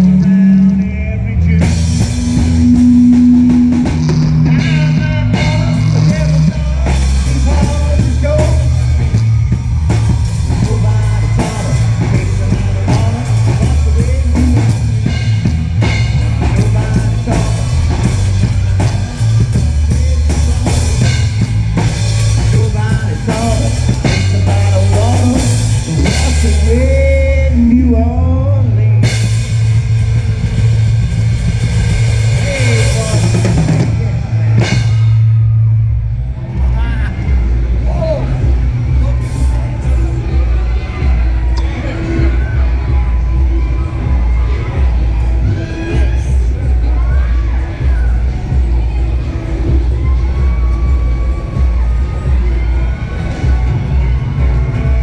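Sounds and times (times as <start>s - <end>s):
lead guitar bending notes: 0.0s - 9.2s
heavy bass notes: 0.0s - 55.0s
loud rock band playing: 0.0s - 55.0s
drum kit steady beat: 1.4s - 55.0s.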